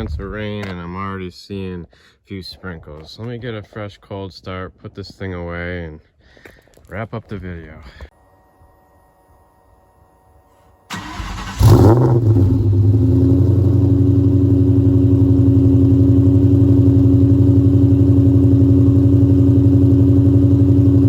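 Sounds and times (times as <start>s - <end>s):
car engine starting and idling: 10.5s - 21.0s.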